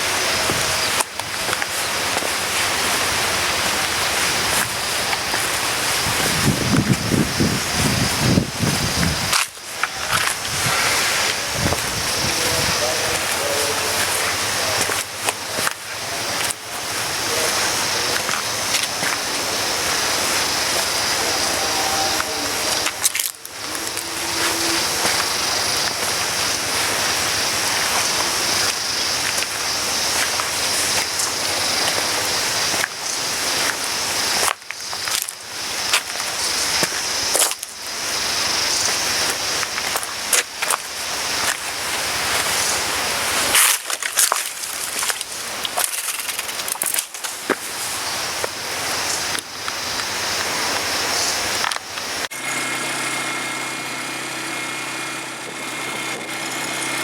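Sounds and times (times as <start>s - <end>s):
wind rushing across microphone: 0.0s - 14.8s
vehicle engine running: 0.0s - 34.5s, 52.1s - 57.0s
sharp crackles: 9.3s - 38.2s, 38.8s - 52.3s.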